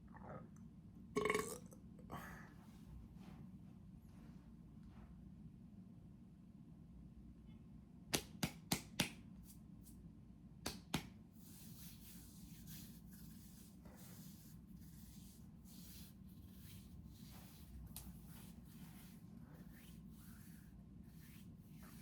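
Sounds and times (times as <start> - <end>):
soft rustling and shuffling: 2.5 - 5.6, 11.4 - 22.0
sharp hand slaps: 8.1 - 9.3, 10.6 - 11.2.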